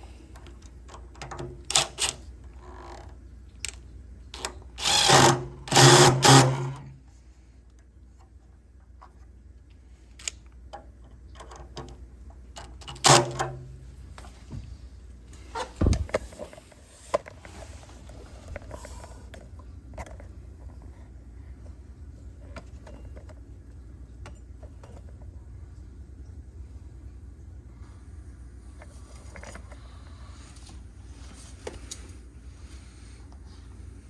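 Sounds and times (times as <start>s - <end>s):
low steady hum: 0.0s - 34.0s
power drill burst: 4.8s - 6.8s
dull thud: 15.7s - 16.3s.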